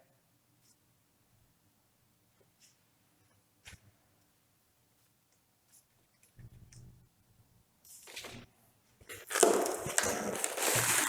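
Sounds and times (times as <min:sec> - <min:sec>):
paper and packaging crinkling: 0:09.1 - 0:11.0.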